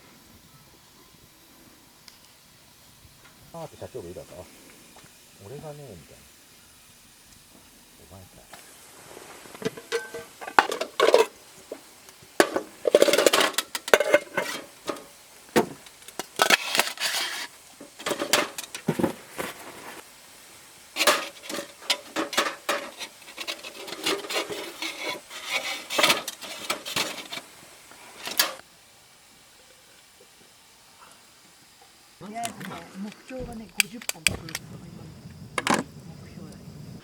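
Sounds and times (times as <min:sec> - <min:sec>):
hard objects clattering: 0:09.6 - 0:19.7, 0:21.0 - 0:27.5
scraping and rubbing: 0:12.4 - 0:15.1, 0:16.2 - 0:20.0, 0:21.0 - 0:28.6.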